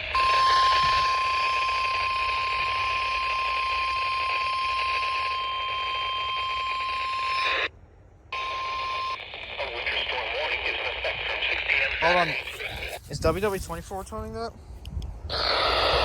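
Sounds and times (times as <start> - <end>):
steady alarm tone: 0.0 - 7.7
radio hiss: 8.4 - 14.2, 15.3 - 16.0.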